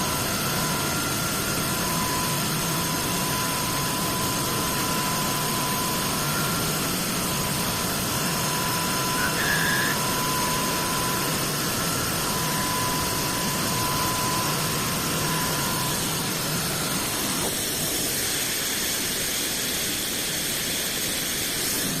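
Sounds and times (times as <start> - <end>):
cnc machine whining: 0.0 - 18.9
brief higher tone: 8.5 - 11.0.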